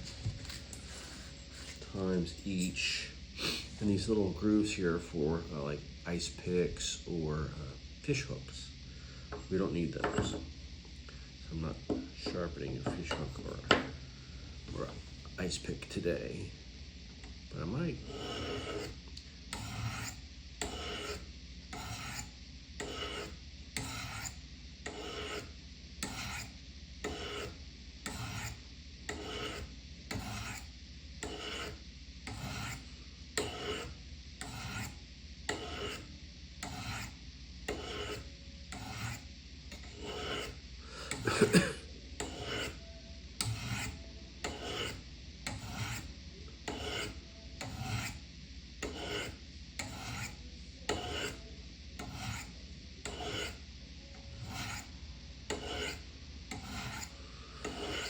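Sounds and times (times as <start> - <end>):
knife scraping on ceramic rods: 0.0 - 4.1, 18.0 - 42.8, 43.4 - 48.2, 48.8 - 51.4, 52.0 - 53.6, 54.3 - 54.9, 55.5 - 58.0.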